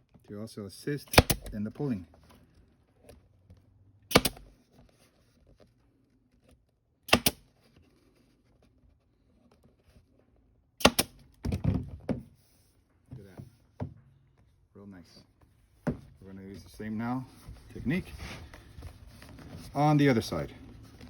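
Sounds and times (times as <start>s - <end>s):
pneumatic staple gun shots: 1.1s - 1.5s, 4.1s - 4.5s, 7.1s - 7.4s, 10.8s - 11.2s.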